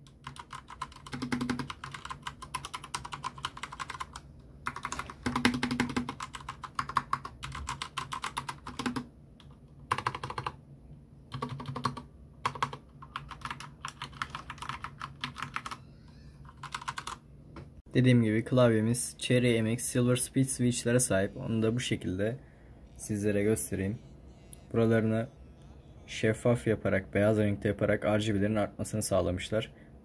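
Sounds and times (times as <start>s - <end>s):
mechanical keyboard typing: 0.0s - 10.6s, 11.3s - 15.8s, 16.5s - 17.2s.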